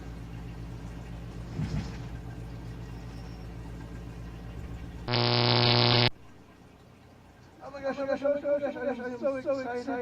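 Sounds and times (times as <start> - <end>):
low electrical hum: 0.0 - 10.0
harsh electronic buzz: 5.1 - 6.2.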